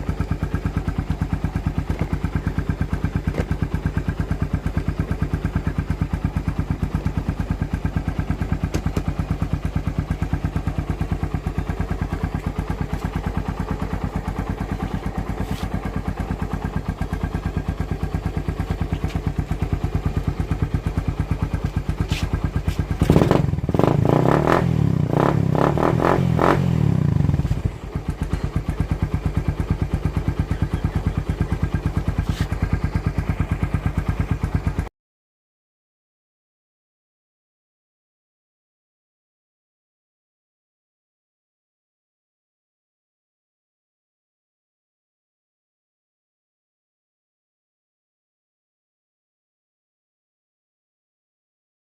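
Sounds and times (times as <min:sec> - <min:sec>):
motorcycle engine idling and revving: 0:00.0 - 0:34.9.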